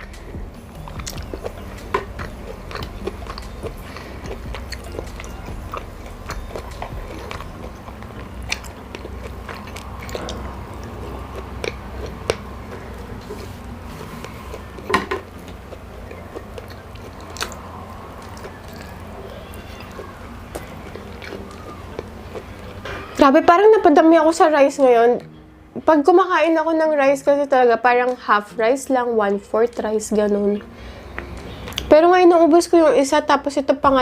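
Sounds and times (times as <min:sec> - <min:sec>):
person chewing food: 0:00.0 - 0:23.1, 0:30.6 - 0:31.9
steady low hum: 0:00.0 - 0:26.6.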